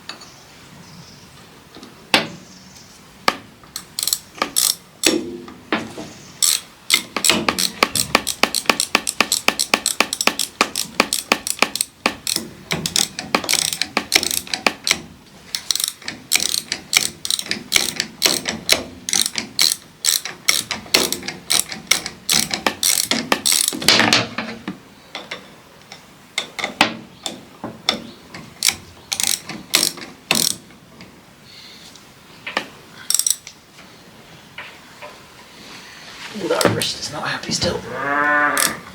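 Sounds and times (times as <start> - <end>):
ratchet wrench clicking: 3.8 - 5.2, 6.4 - 23.8, 28.6 - 30.6, 33.1 - 33.5.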